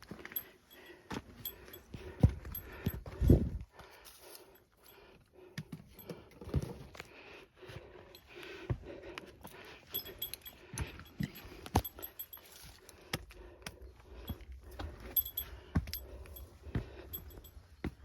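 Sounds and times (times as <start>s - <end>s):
gear jangling: 0.0s - 3.6s, 9.4s - 13.1s, 14.1s - 18.0s
footsteps on rocky trail: 0.0s - 18.0s.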